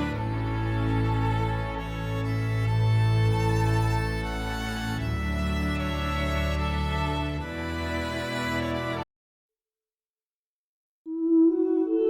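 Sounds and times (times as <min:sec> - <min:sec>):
slow string music with violin: 0:00.0 - 0:09.0.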